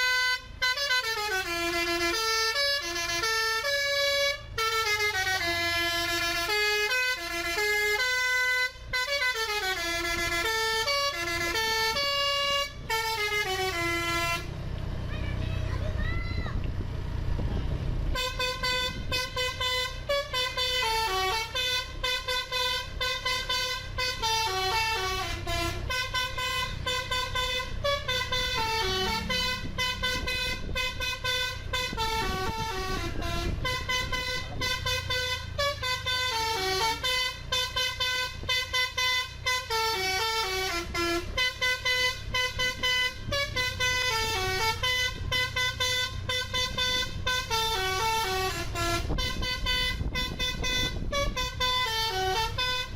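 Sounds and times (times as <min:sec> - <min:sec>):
multi-tone bus horn melody: 0:00.0 - 0:14.6, 0:18.1 - 0:52.9
low rumble: 0:09.8 - 0:20.9, 0:25.0 - 0:36.4.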